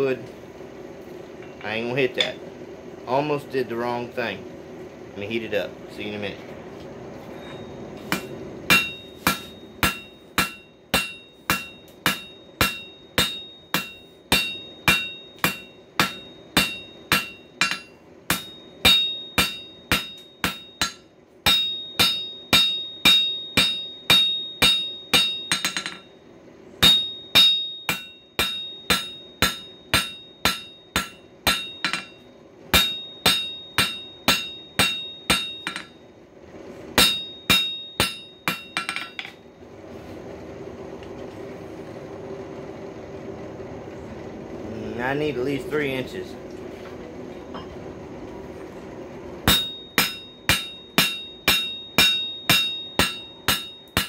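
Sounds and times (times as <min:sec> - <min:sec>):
hammer striking steel on anvil: 0:07.5 - 0:26.2, 0:26.8 - 0:36.0, 0:37.0 - 0:39.4, 0:49.4 - 0:54.0.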